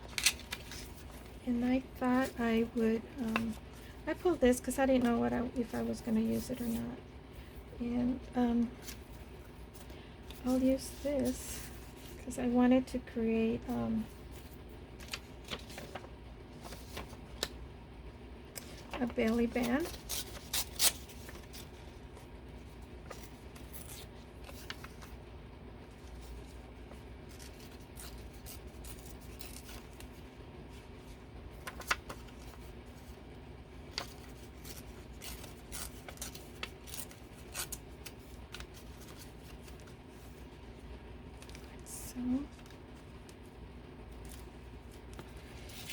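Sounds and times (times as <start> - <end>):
paper rustling: 0.0 - 1.4, 2.0 - 6.9, 13.6 - 17.6, 18.5 - 25.2, 25.8 - 33.2, 33.8 - 43.4, 44.1 - 45.9
faint steady hum: 0.0 - 45.9
scissors cutting paper: 18.6 - 21.7, 27.3 - 30.2, 33.9 - 39.8.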